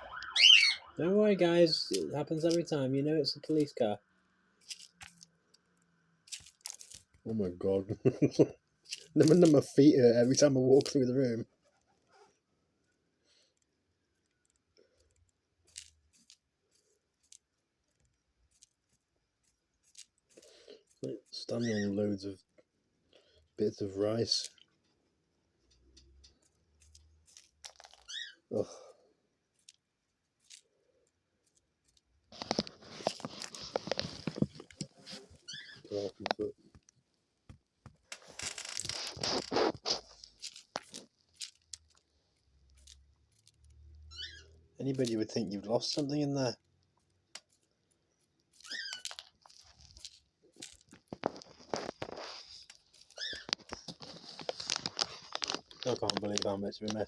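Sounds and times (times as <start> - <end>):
dove squeaks: 0.0 - 1.0, 28.0 - 28.5, 35.4 - 36.0, 44.0 - 44.7, 48.6 - 49.2, 53.1 - 53.9
grains clicking and rattling: 1.4 - 11.5, 12.8 - 22.5, 23.2 - 24.8, 25.6 - 57.0
dove pecking through seed: 1.7 - 57.0.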